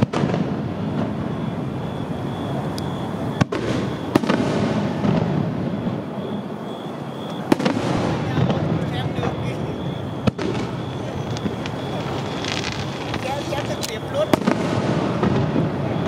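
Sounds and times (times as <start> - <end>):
fireworks crackling: 0.0 - 16.0
firework shells bursting: 2.6 - 6.1, 7.2 - 15.8.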